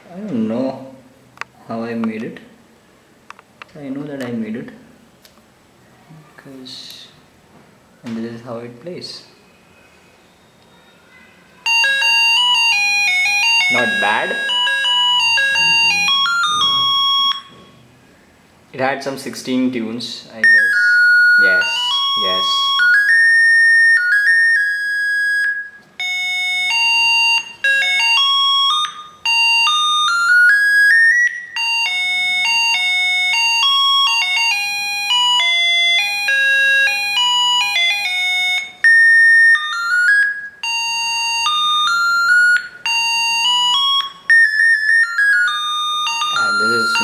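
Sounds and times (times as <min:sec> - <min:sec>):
electronic doorbell tune: 0:11.6 - 0:17.8, 0:20.4 - 0:47.0.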